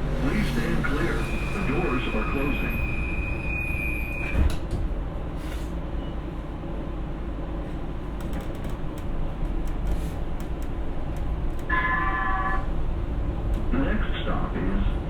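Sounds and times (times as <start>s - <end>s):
rail car rumble: 0.0s - 15.0s
train doors thudding shut: 4.2s - 5.0s.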